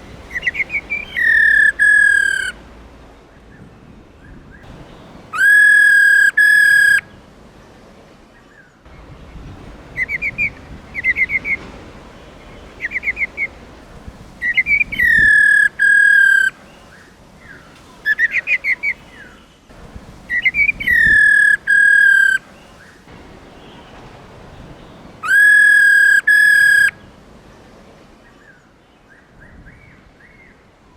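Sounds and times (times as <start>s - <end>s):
bird rapid chattering: 0.3s - 2.5s, 20.3s - 22.4s
bird whistling long notes: 0.3s - 2.6s, 5.3s - 7.0s, 14.4s - 16.5s, 20.3s - 22.4s, 25.2s - 26.9s.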